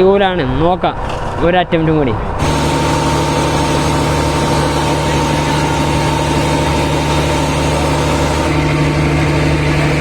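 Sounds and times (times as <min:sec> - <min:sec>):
boat engine running: 0:02.4 - 0:10.0.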